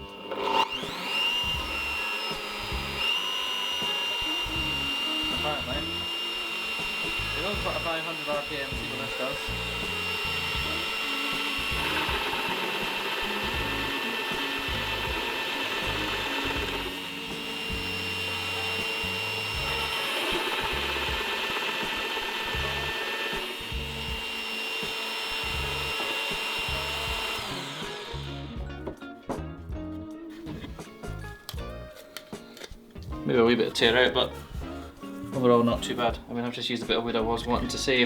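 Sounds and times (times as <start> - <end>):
drill bit boring into wood: 0.0 - 28.7
drill press motor whine: 0.0 - 28.9.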